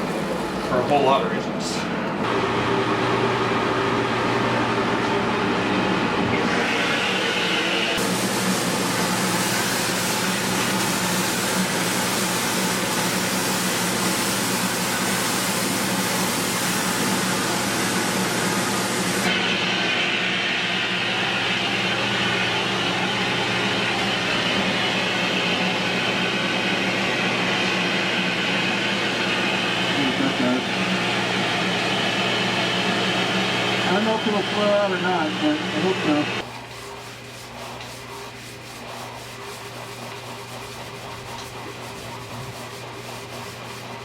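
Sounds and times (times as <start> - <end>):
steady motor hum: 0.0 - 44.0
hiss of spraying air: 8.0 - 19.3.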